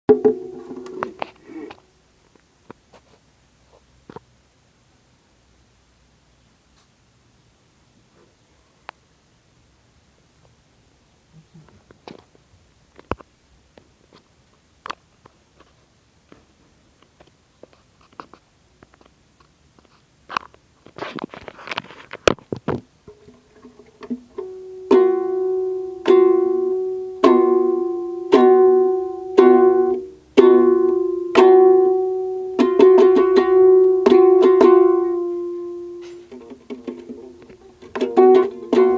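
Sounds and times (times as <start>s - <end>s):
ukulele chord strummed: 0.1s - 1.2s, 23.1s - 38.9s
tapping and rubbing on ukulele: 0.1s - 1.8s, 19.8s - 25.3s, 26.0s - 26.6s, 32.6s - 38.9s.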